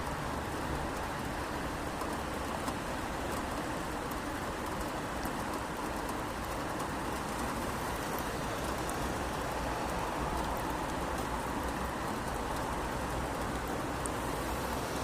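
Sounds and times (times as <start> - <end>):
raindrop ticks: 0.0 - 14.9
rain hissing: 7.0 - 15.0.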